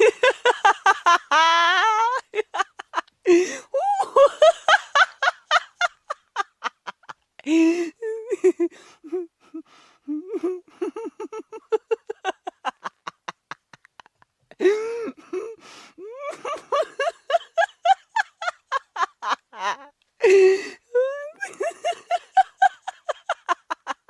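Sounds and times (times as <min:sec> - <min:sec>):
person laughing hard: 0:00.0 - 0:09.3, 0:10.1 - 0:24.0
gasping breath: 0:03.3 - 0:03.8, 0:07.4 - 0:08.0, 0:14.5 - 0:16.1, 0:20.2 - 0:20.9.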